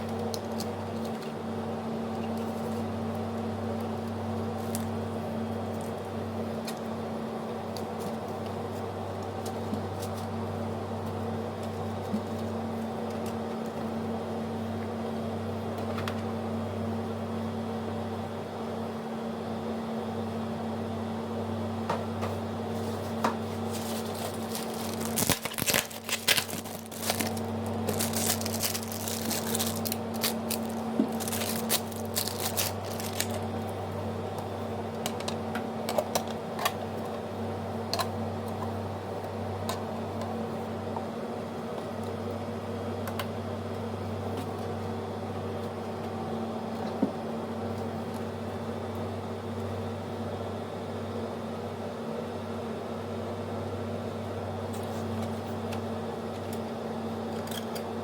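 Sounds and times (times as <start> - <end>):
steady low hum: 0.0 - 58.0
crinkling handling noises: 3.8 - 6.9, 22.7 - 34.0.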